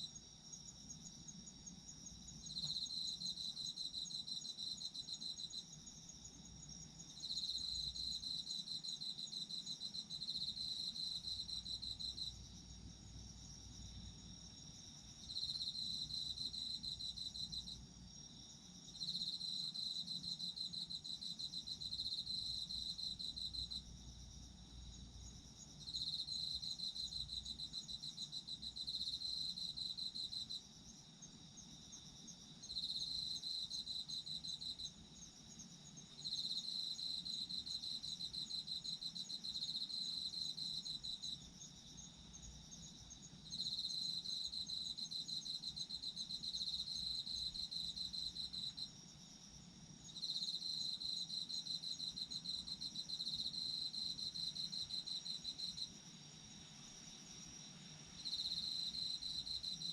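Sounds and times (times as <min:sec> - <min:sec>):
cricket pulsed trills: 0:00.0 - 0:59.9
high-pitched insect trill: 0:24.9 - 0:59.9.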